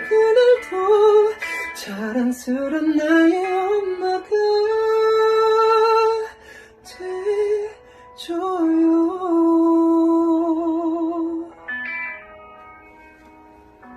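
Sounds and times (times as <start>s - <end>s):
man singing a slow ballad: 0.0s - 11.6s
singer breathing: 6.3s - 6.9s, 7.8s - 8.2s.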